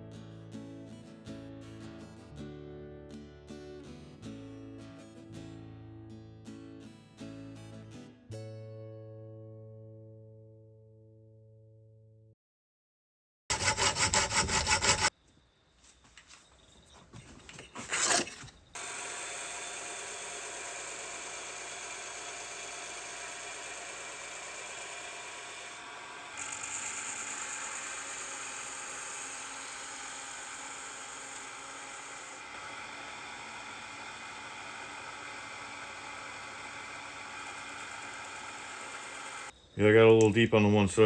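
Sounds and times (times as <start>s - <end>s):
belt grinder grinding steel: 13.5s - 15.1s, 17.4s - 39.6s.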